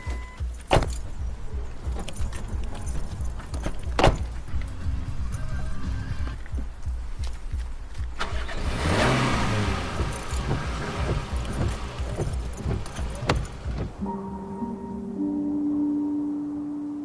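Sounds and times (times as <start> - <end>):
steady low rumble: 0.3 - 17.0
car passing: 8.1 - 17.0.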